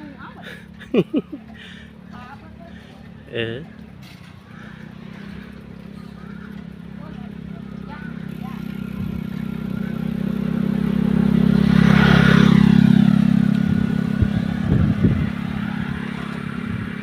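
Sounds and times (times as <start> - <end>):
vehicle engine passing by: 0.0 - 17.0.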